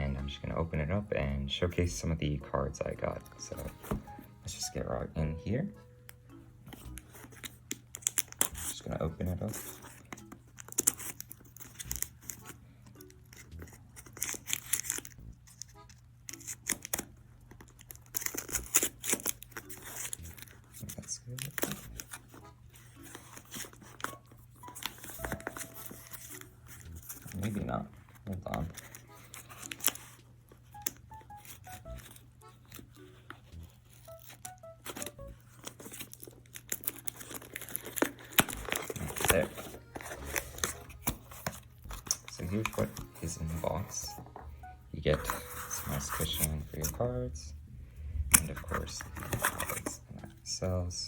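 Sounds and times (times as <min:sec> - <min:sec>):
packing tape cut and torn: 0:06.7 - 0:08.8, 0:09.4 - 0:27.6, 0:28.5 - 0:43.4, 0:48.4 - 0:50.0
cardboard box tearing and crackling: 0:17.8 - 0:20.5, 0:35.6 - 0:43.0.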